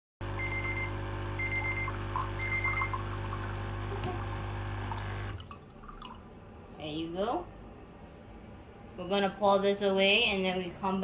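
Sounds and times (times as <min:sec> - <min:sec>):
coffee machine pump humming: 0:00.2 - 0:06.4.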